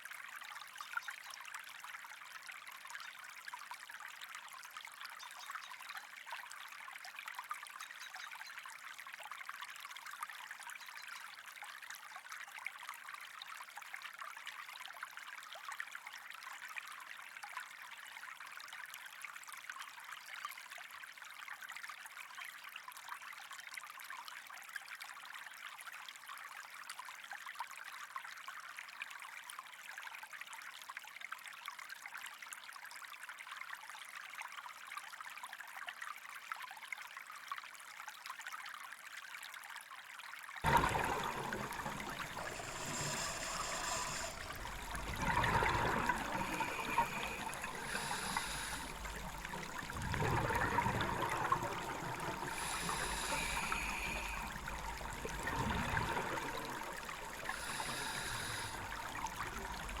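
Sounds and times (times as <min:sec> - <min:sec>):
water trickling and rushing: 0:40.6 - 1:00.0.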